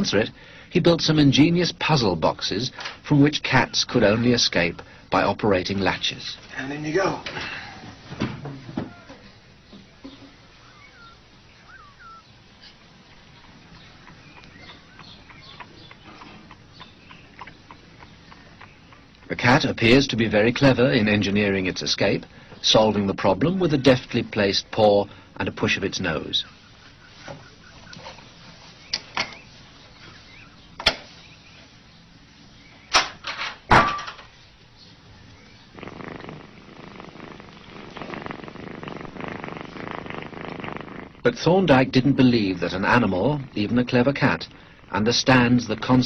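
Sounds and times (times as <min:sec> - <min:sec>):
faint cat chirps: 0:10.7 - 0:12.3.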